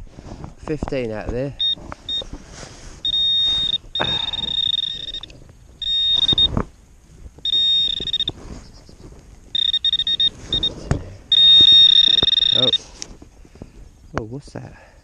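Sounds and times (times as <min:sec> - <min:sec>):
high-pitched electronic tone: 0:03.1 - 0:06.6, 0:07.5 - 0:08.4, 0:09.6 - 0:12.9.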